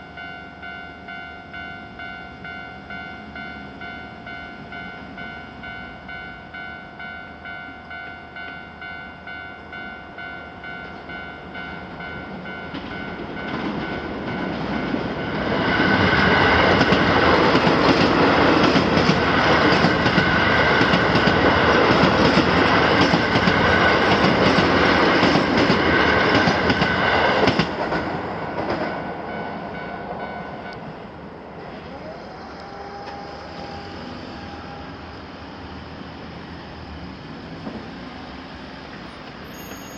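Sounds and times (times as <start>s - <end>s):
level-crossing warning bell: 0.0s - 27.6s, 28.6s - 30.9s, 39.0s - 39.9s
electric train passing: 0.0s - 39.9s.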